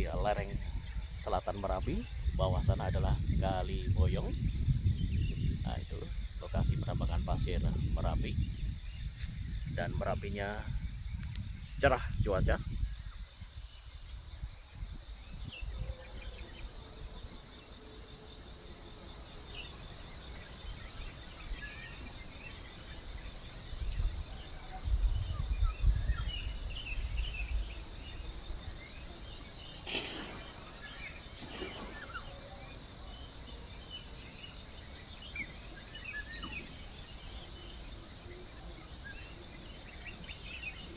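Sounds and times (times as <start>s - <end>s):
wind buffeting microphone: 0.0s - 17.5s, 23.4s - 29.0s, 29.6s - 33.3s
insect drone: 0.0s - 40.9s
bird chirps: 29.4s - 37.8s.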